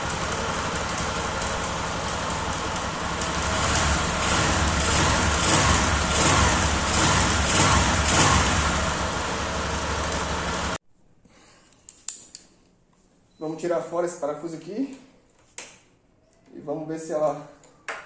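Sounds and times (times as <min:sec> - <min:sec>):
motorcycle engine revving: 0:00.0 - 0:10.8.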